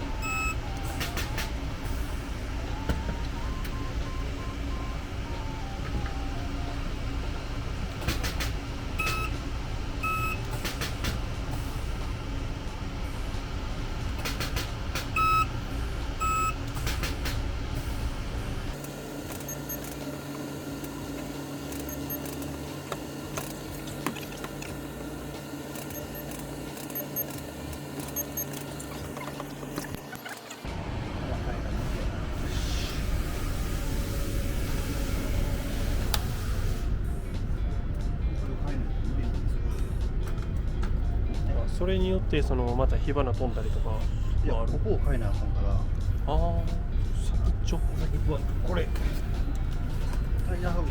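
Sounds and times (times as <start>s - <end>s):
short electronic beeps: 0.0s - 1.0s, 9.0s - 9.3s, 10.0s - 10.4s, 15.2s - 15.5s, 16.2s - 16.6s, 21.8s - 22.3s, 25.9s - 26.3s, 28.1s - 28.6s
machinery noise with clicks: 0.2s - 2.2s, 7.8s - 12.2s, 14.1s - 15.5s, 16.2s - 18.0s, 18.7s - 30.8s
steady low hum: 30.7s - 50.9s.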